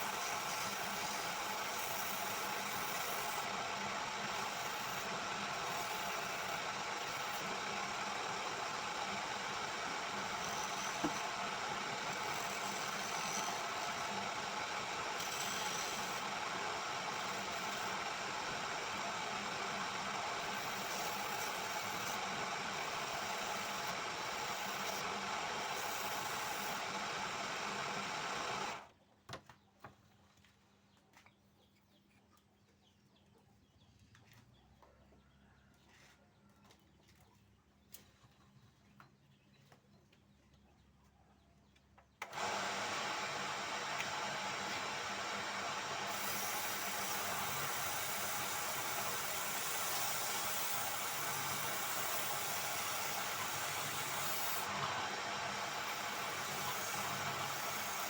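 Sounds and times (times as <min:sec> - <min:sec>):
woodworking power tool running: 0:00.0 - 0:28.9, 0:42.2 - 0:58.0.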